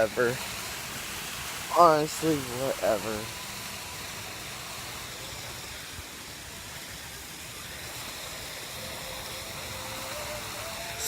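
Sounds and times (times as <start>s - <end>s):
steady background hiss: 0.0s - 11.0s.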